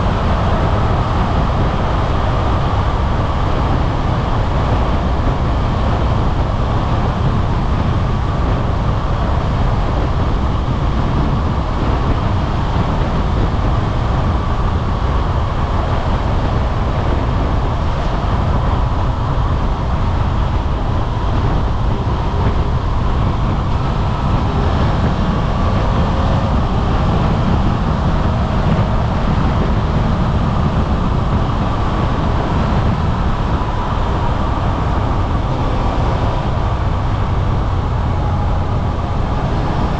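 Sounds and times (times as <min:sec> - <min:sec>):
motorcycle engine rumble: 0:00.0 - 0:39.9
road and wind noise: 0:00.0 - 0:39.9.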